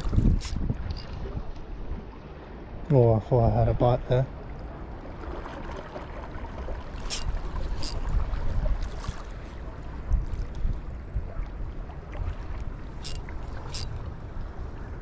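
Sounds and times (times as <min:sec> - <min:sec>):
wind buffeting microphone: 0:00.0 - 0:02.1.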